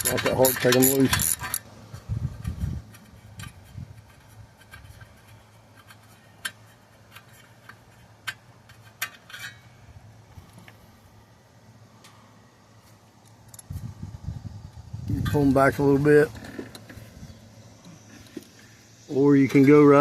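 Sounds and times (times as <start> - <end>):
metallic clicks of hand ratchet: 0.0 - 1.6.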